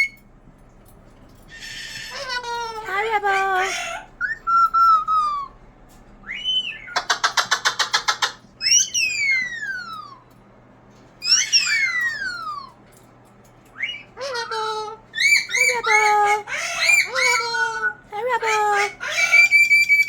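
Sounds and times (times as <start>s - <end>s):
bird whistling downward: 6.2s - 8.0s, 8.6s - 10.2s, 11.2s - 12.8s, 13.8s - 14.2s, 19.2s - 20.0s.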